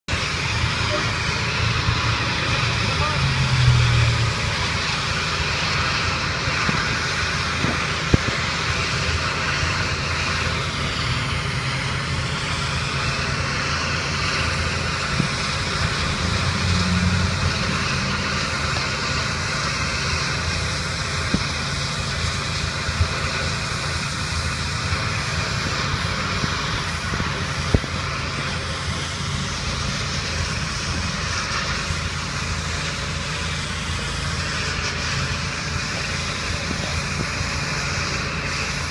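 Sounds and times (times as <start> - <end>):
low engine drone: 0.0 - 38.9
high-pressure water spray hissing: 0.1 - 38.9.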